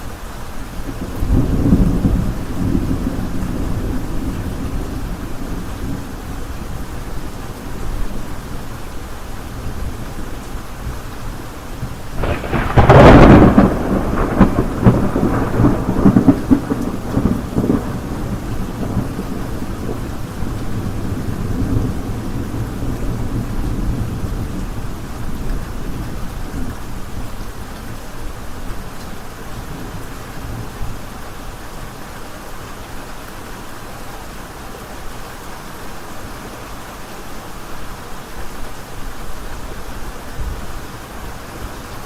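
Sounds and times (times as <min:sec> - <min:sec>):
steady rain: 0:00.0 - 0:42.0
thunderclap rolling into rumbles: 0:12.2 - 0:26.7.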